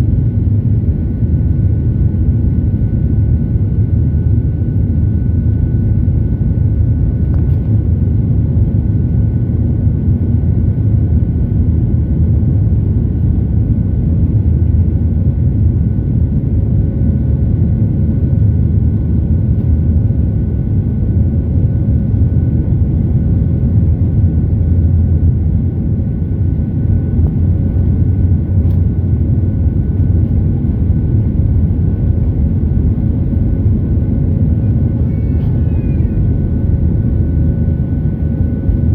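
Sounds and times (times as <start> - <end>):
faint jet engine whine: 0.0 - 38.9
jet engines rumbling: 11.0 - 38.9.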